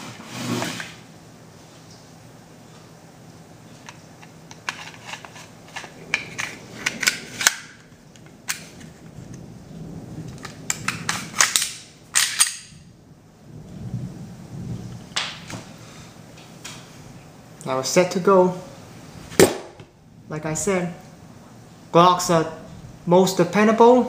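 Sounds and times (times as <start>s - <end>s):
pistol slide clicks and clacks: 4.5s - 7.8s, 10.6s - 12.7s.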